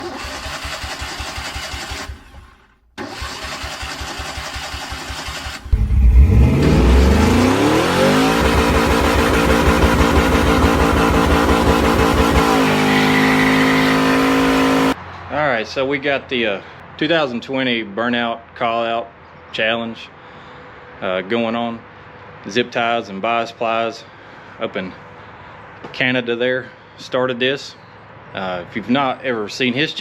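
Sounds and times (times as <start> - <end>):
vehicle engine revving: 4.1 - 15.0.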